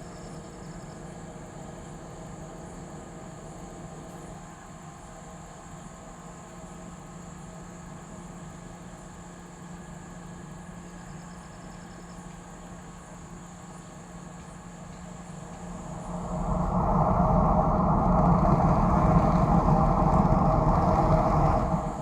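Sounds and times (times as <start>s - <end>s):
diesel engine humming: 15.4s - 22.0s.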